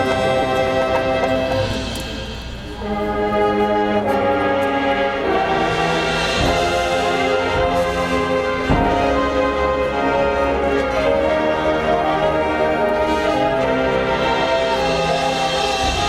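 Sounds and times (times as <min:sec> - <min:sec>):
marching band brass chords: 0:00.0 - 0:16.0.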